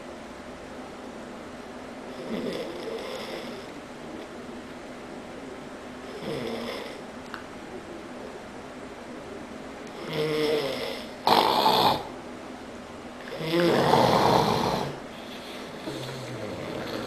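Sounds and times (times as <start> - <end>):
man snoring heavily: 10.0 - 12.1, 13.4 - 15.0.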